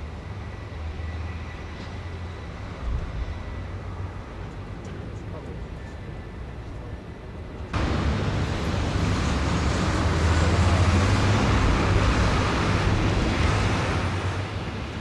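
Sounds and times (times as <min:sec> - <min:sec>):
heavy vehicle engine running: 0:07.8 - 0:15.0
road traffic noise: 0:07.8 - 0:15.0.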